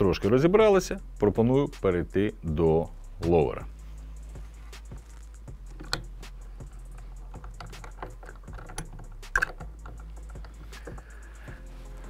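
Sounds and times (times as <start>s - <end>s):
steady low hum: 1.0s - 12.0s
tools clicking and clacking: 5.6s - 11.2s.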